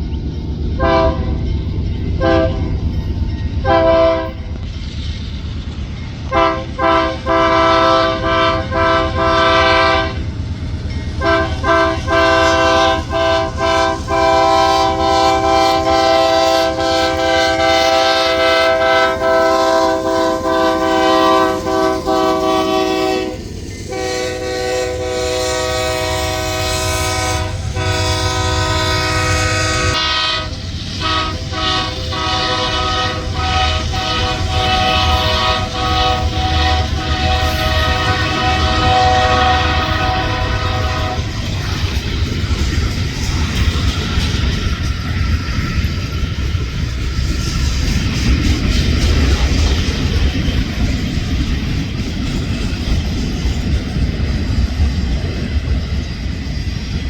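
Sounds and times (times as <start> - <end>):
low train rumble: 0.0 - 57.0
locomotive air horn blasts: 0.8 - 1.4, 2.2 - 2.7, 3.6 - 4.6, 6.3 - 10.2, 11.2 - 41.4.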